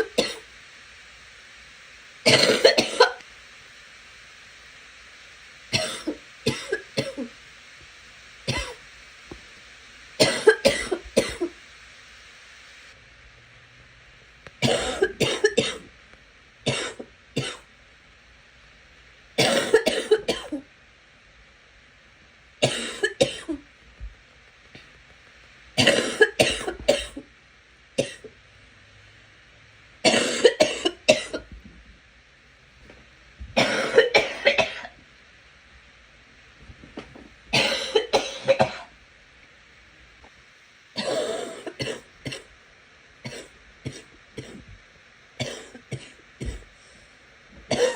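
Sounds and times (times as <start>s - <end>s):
girl coughing: 2.3s - 3.2s, 5.8s - 7.3s, 10.2s - 11.6s, 14.6s - 15.9s, 19.4s - 20.6s, 22.6s - 23.6s, 25.8s - 27.2s, 30.1s - 31.4s, 33.6s - 34.9s, 37.6s - 38.9s, 41.0s - 42.5s.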